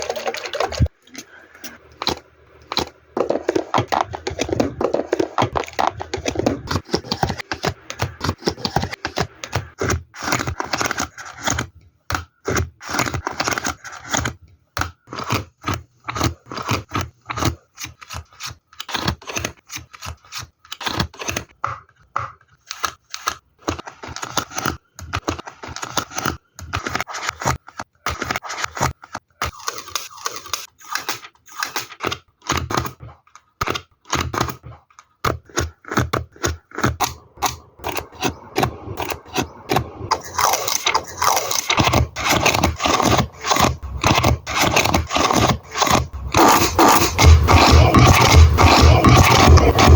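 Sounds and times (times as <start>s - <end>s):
scraping and crackling handling noise: 12.8s - 49.9s
tearing: 40.1s - 49.9s.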